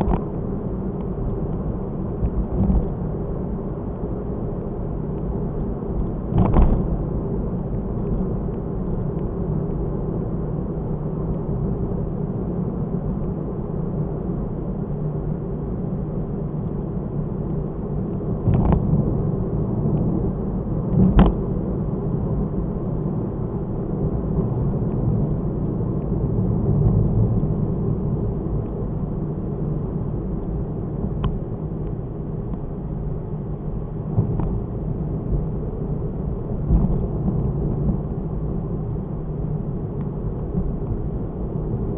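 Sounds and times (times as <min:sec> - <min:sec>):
engine and road rumble: 0:00.0 - 0:41.9.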